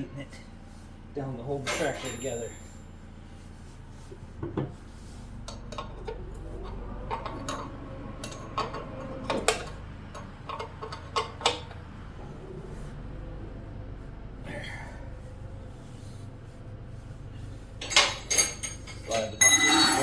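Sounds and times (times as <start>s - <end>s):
metal tools clinking: 1.6s - 2.8s, 5.5s - 11.8s, 17.8s - 20.0s.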